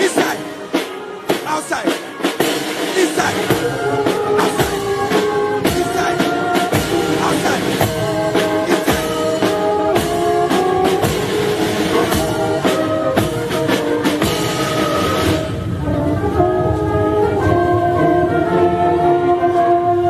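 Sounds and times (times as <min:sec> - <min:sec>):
steady drum beat: 0:00.0 - 0:15.5
band playing slow music: 0:00.0 - 0:20.0.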